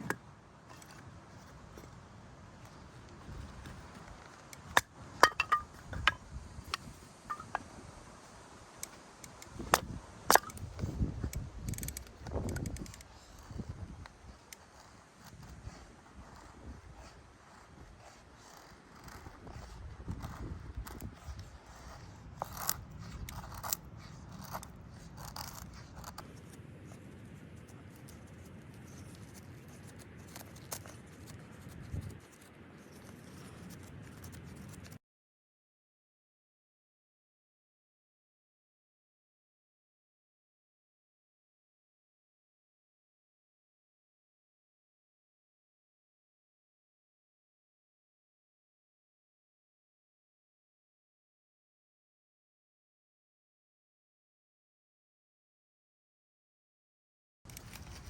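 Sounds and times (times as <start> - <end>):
camping gear clicks and knocks: 0.0 - 7.8, 8.8 - 35.0, 57.5 - 58.0
rustling: 57.5 - 58.0.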